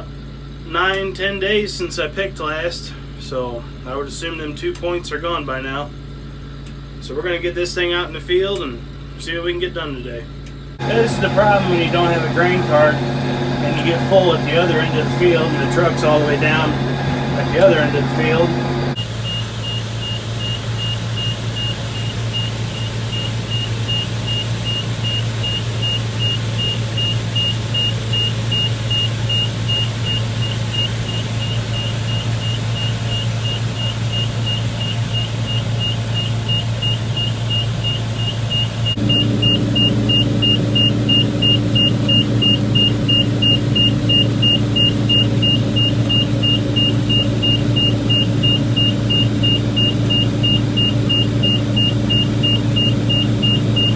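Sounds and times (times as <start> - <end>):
combine engine running: 10.8 - 53.9
high-pitched warning beeps: 10.8 - 53.9
machine hum: 10.8 - 53.9.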